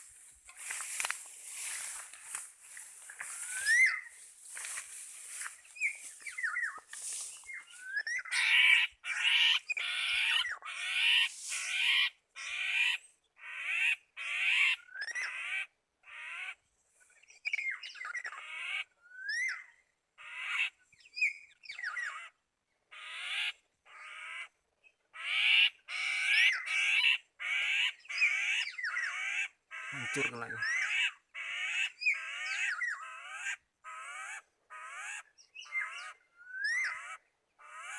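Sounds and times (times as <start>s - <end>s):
bird harsh nasal squawks: 8.2s - 15.5s, 25.2s - 35.2s.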